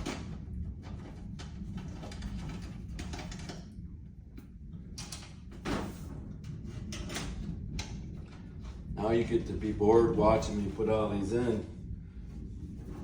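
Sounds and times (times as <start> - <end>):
sheet metal clattering and scraping: 0.0 - 3.8, 5.0 - 10.9
low hum: 0.0 - 13.0.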